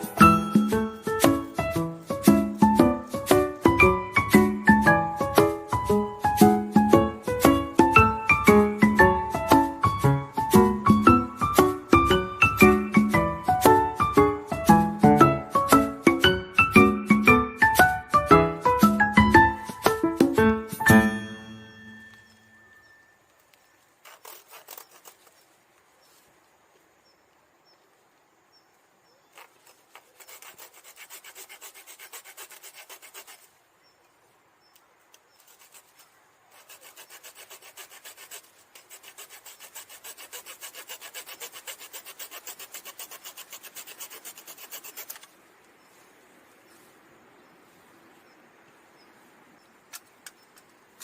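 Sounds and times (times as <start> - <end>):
hand saw cutting wood: 24.0 - 25.4, 29.4 - 33.6, 35.4 - 45.4.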